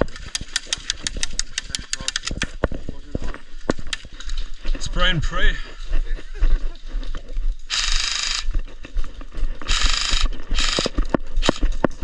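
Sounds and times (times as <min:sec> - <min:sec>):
airsoft rifle firing bursts: 0:07.7 - 0:08.5, 0:09.7 - 0:11.6.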